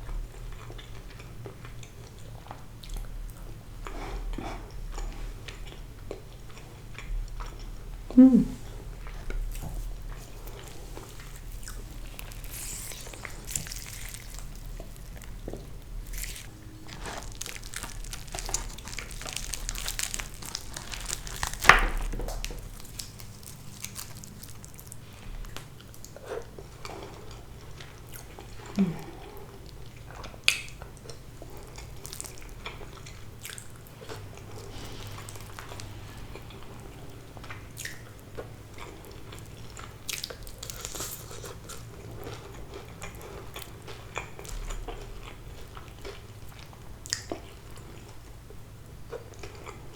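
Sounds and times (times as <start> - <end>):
crunchy chewing: 8.7 - 48.2.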